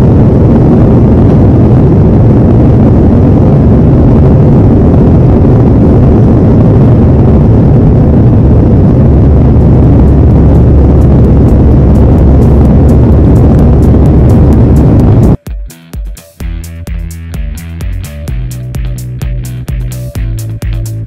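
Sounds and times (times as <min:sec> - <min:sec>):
jet engines roaring on takeoff: 0:00.8 - 0:15.4.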